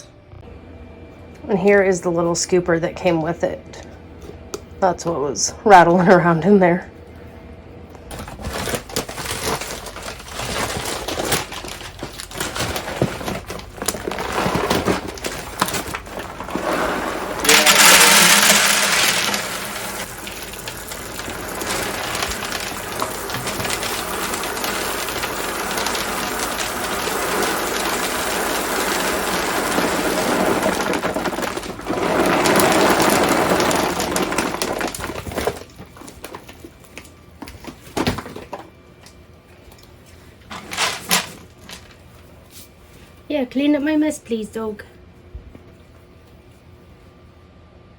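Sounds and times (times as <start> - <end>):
kibble pouring into plastic bin: 8.1 - 35.7.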